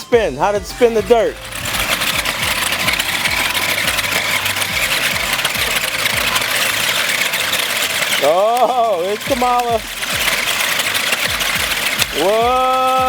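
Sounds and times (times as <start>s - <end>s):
toy car electric motors whirring: 0.0s - 13.0s
fine rattle: 0.5s - 13.0s.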